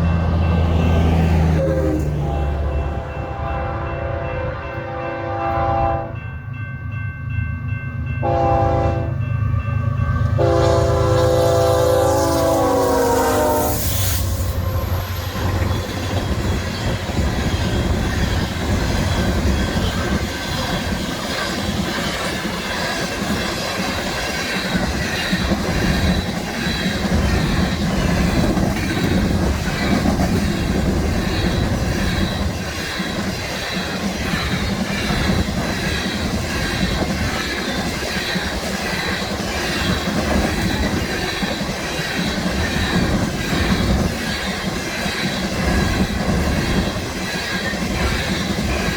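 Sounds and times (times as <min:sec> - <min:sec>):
high wheel squeal: 0:11.1 - 0:22.9, 0:24.4 - 0:36.1
train wheels clattering over rails: 0:14.4 - 0:48.9.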